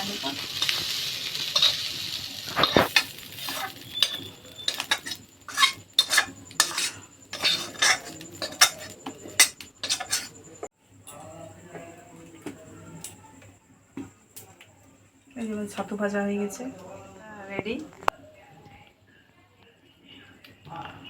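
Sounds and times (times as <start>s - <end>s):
metal spatula scraping a pan: 0.0s - 10.5s.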